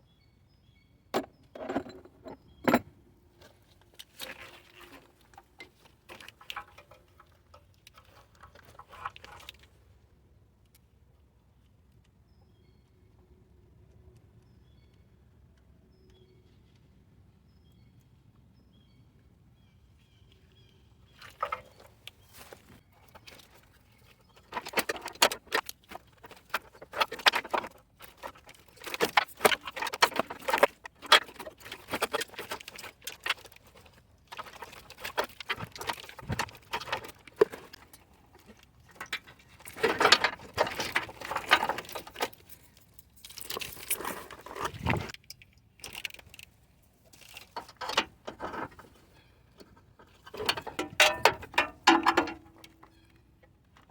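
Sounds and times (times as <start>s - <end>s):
metallic clicking and rattling: 50.2s - 53.0s.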